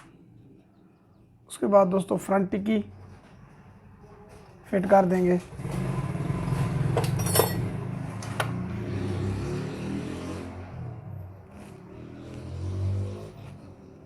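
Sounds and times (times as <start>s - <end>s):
metal engine parts clinking: 7.0s - 7.8s.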